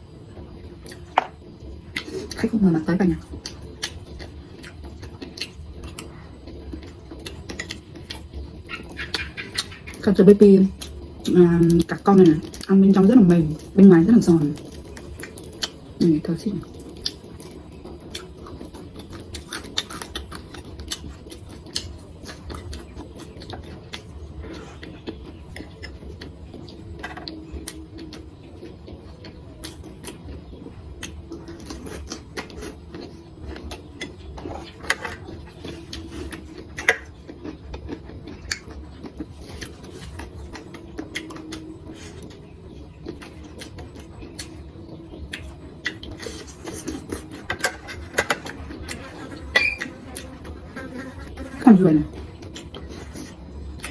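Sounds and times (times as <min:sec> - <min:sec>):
faint steady hum: 0:00.0 - 0:53.9
wet chewing clicks: 0:03.4 - 0:10.1, 0:16.6 - 0:50.6, 0:52.1 - 0:53.9.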